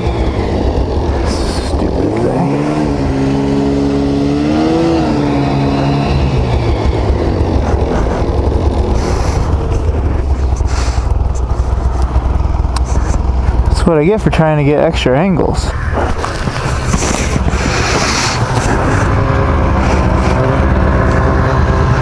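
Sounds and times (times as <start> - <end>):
loud uneven low rumble: 0.0 - 22.0
snowmobile engine running: 0.0 - 22.0.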